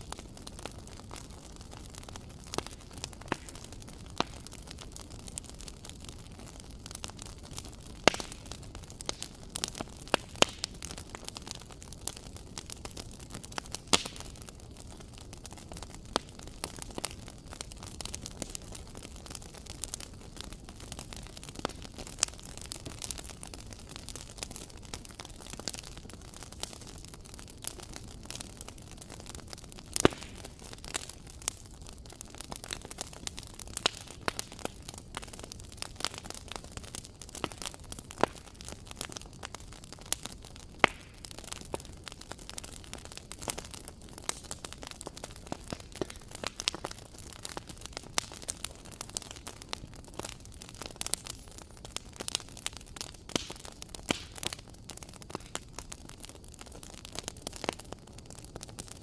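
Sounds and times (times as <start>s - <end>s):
wood fire crackling: 0.0s - 59.0s
sharp pops of fire: 2.5s - 4.6s, 7.5s - 11.4s, 12.0s - 14.5s, 29.8s - 31.6s, 32.6s - 56.2s.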